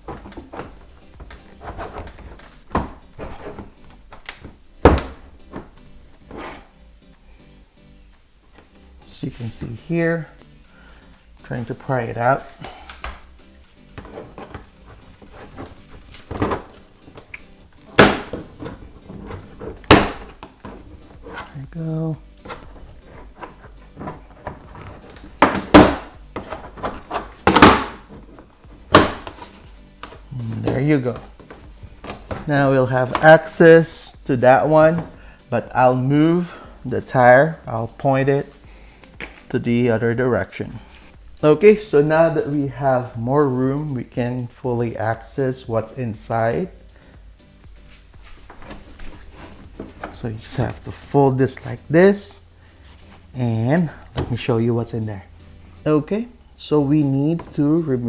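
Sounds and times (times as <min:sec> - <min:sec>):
plastic panel clattering: 0:00.0 - 0:05.8, 0:13.9 - 0:21.6, 0:22.4 - 0:33.6.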